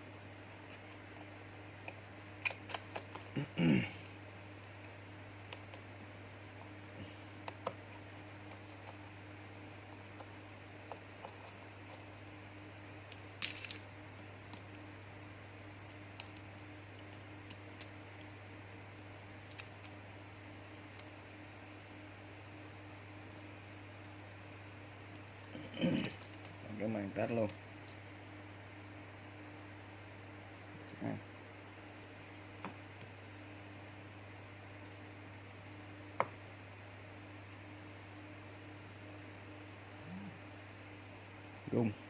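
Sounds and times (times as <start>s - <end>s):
mains hum: 0.0s - 42.0s
small clicks and taps of tools: 7.4s - 9.1s, 15.8s - 18.3s.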